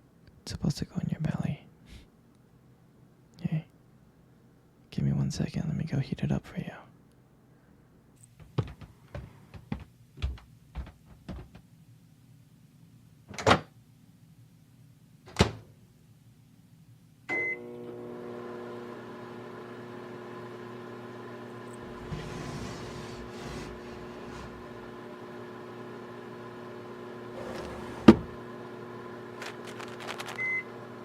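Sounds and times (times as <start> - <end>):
microwave oven humming: 17.3 - 31.0.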